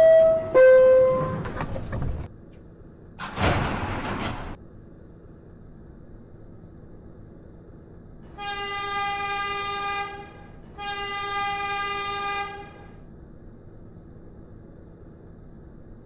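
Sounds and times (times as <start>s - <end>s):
horn blasts: 0.0s - 1.5s, 8.4s - 12.9s.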